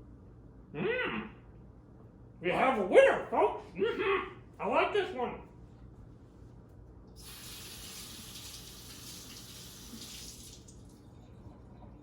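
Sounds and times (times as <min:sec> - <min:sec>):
kitchen tap running: 0:07.2 - 0:11.3.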